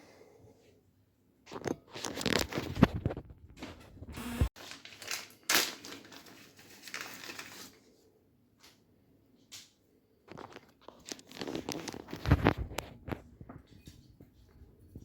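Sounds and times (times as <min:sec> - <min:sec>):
handling noise clicks and crinkling: 0:01.5 - 0:03.9, 0:04.6 - 0:07.8, 0:09.4 - 0:14.4.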